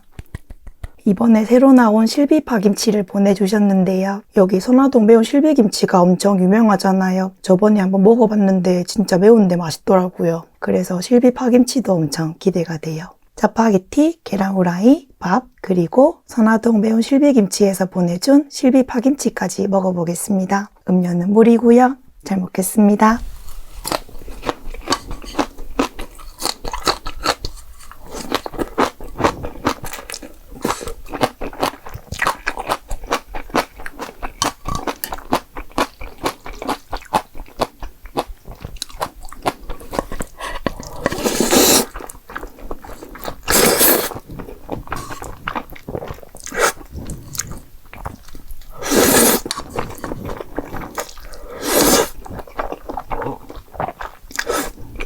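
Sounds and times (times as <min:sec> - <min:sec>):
wet chewing and mouth clicks: 0:00.0 - 0:01.0, 0:23.5 - 0:55.0.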